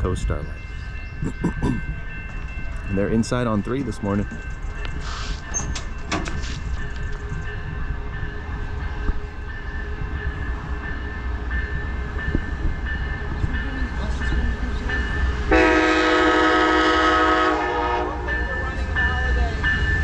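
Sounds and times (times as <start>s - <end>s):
passenger train rumbling: 0.0s - 20.0s
locomotive horn blast: 15.5s - 18.4s.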